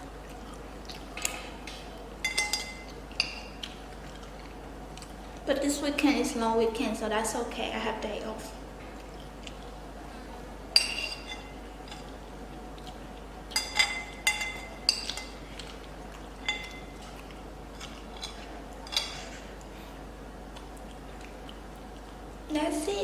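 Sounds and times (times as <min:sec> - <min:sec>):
cutlery clinking against dish: 0:02.2 - 0:03.5, 0:10.8 - 0:12.1, 0:13.5 - 0:15.4, 0:16.4 - 0:17.0.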